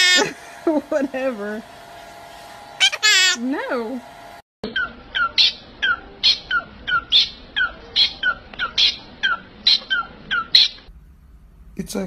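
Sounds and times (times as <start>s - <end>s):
pet bird chirping: 4.6s - 10.9s.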